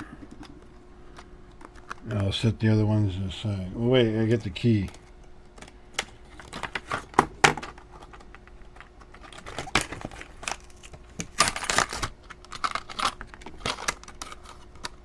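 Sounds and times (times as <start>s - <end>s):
packaging rustling and crinkling: 6.0s - 15.0s.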